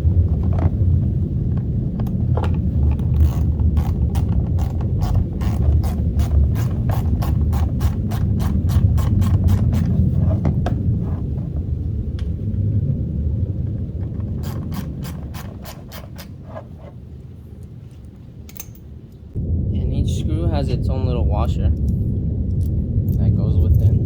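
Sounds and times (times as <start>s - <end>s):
low rubbing rumble: 0.0s - 24.0s
ratchet clicking: 2.9s - 9.9s, 14.4s - 16.4s.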